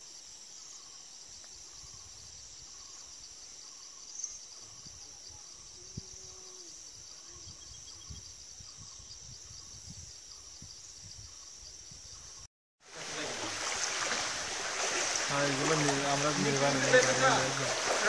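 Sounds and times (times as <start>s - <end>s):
insect chorus trilling: 0.0s - 18.0s
running water rushing: 12.8s - 18.0s.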